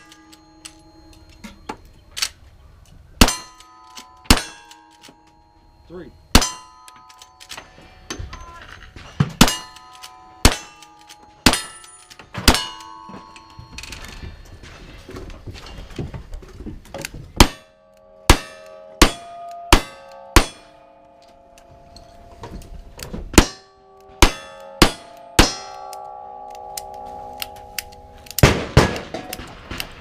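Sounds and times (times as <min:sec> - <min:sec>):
steel plate ringing: 0:00.0 - 0:02.2, 0:03.2 - 0:14.7, 0:17.4 - 0:30.0
gunshots: 0:28.4 - 0:30.0.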